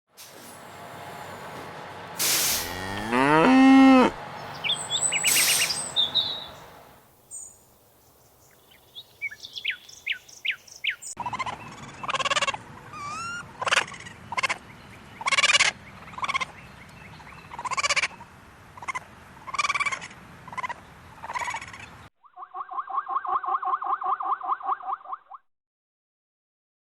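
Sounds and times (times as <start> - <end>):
poultry calling loudly: 2.7 - 6.8, 9.6 - 14.6, 15.2 - 16.5, 17.5 - 18.2
faint bird chirps: 4.4 - 6.6.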